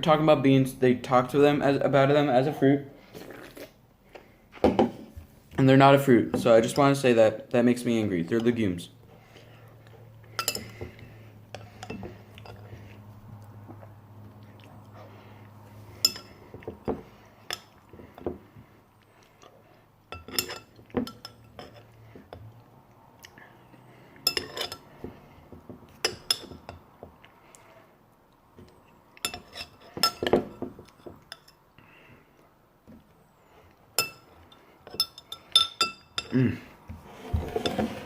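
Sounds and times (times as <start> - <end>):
cutlery clinking against a dish: 10.4 - 10.8, 20.1 - 21.9, 24.3 - 24.9, 29.2 - 31.6.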